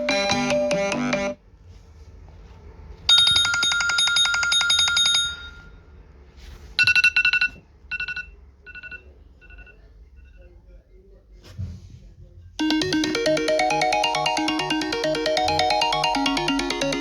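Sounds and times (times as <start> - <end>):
phone ringtone trilling ring: 12.6 - 17.0.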